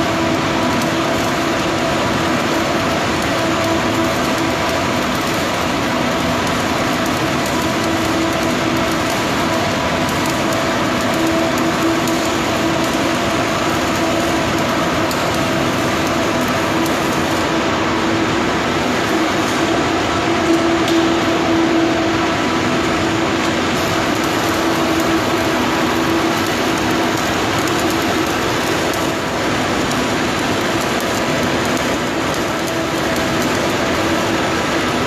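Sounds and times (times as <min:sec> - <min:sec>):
droning machinery hum: 0:00.0 - 0:35.0
loud rushing noise: 0:14.0 - 0:29.6.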